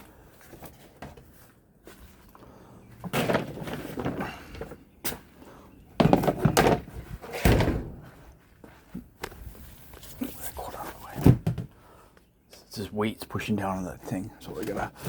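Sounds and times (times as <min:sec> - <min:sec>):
metal and plastic items clattering: 0:03.0 - 0:04.8, 0:06.0 - 0:07.6.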